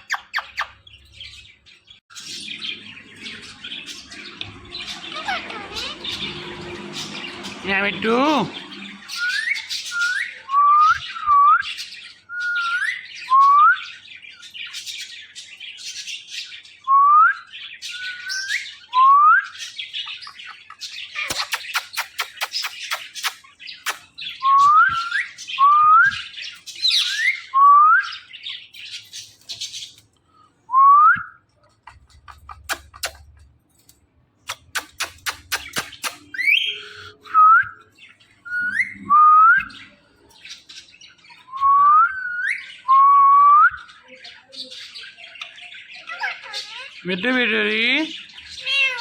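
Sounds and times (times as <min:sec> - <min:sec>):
parakeet chirping and chattering: 0:00.0 - 0:13.3, 0:17.6 - 0:27.5, 0:28.1 - 0:30.2, 0:31.5 - 0:42.9, 0:43.8 - 0:49.0
parakeet whistling: 0:03.3 - 0:13.8, 0:34.5 - 0:40.0, 0:41.3 - 0:43.9.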